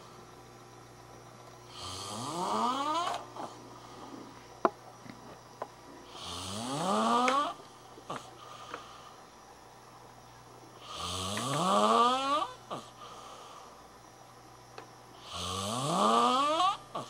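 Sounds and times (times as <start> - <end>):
person snoring loudly: 1.7 - 3.2, 6.0 - 8.3, 10.8 - 13.1, 15.2 - 17.0.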